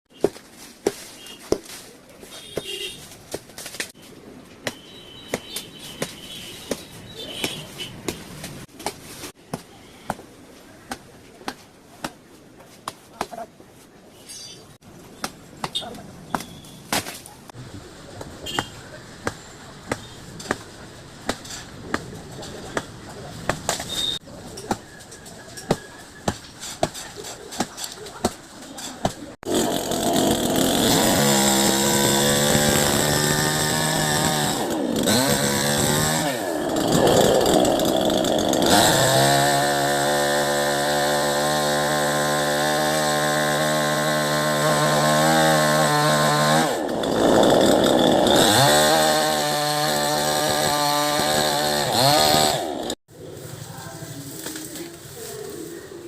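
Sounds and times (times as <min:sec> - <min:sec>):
axe chopping wood: 0:15.2 - 0:17.3, 0:21.3 - 0:24.0, 0:25.7 - 0:29.2.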